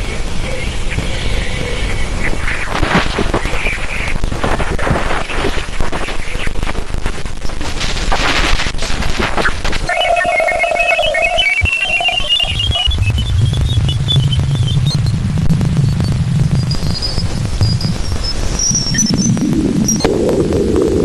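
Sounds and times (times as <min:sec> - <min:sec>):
electronic crackle of rapid clicks: 0:02.2 - 0:21.0
steady mid tone: 0:09.8 - 0:20.6
high beeps climbing in pitch: 0:09.9 - 0:15.2.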